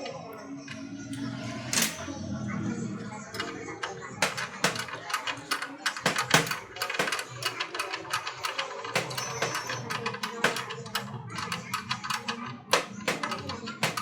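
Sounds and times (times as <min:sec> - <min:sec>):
metal tools clinking: 0:01.6 - 0:02.1, 0:03.3 - 0:14.0.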